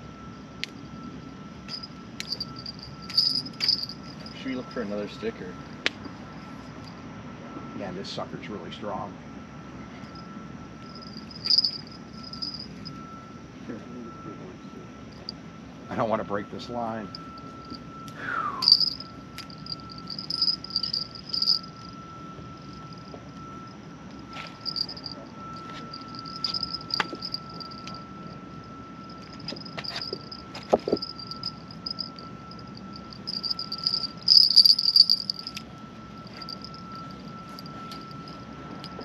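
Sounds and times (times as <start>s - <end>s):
insects chirping in trills: 0.0s - 7.2s, 10.0s - 13.4s, 16.8s - 39.0s
steady high tone: 0.9s - 5.8s, 9.9s - 13.4s, 16.8s - 39.0s.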